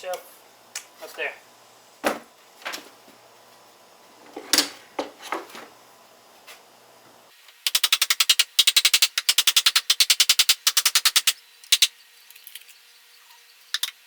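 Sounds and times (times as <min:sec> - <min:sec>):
wooden board knocking against wall: 0:04.3 - 0:05.7.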